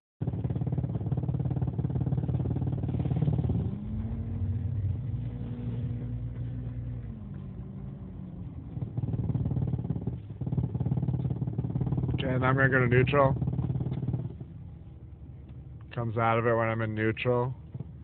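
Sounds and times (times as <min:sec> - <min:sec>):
car engine idling with pulsing drone: 0:00.2 - 0:18.0.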